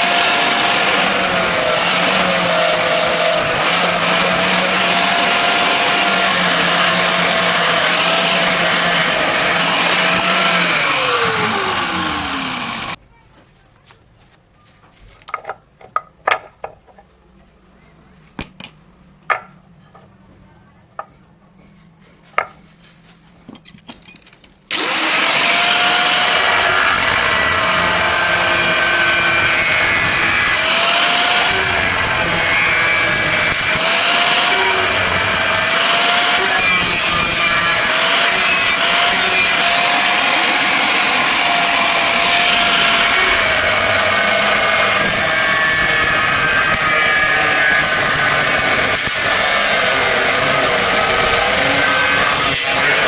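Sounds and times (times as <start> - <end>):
power tool running under load: 0.0 - 13.0, 24.7 - 53.0.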